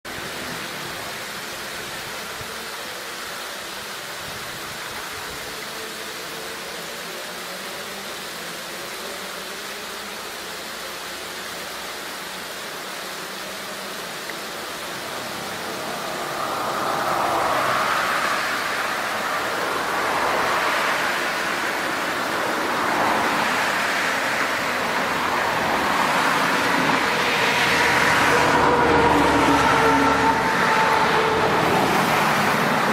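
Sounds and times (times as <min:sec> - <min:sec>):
waterfall rushing: 0:00.1 - 0:32.9
road traffic passing: 0:13.9 - 0:32.9.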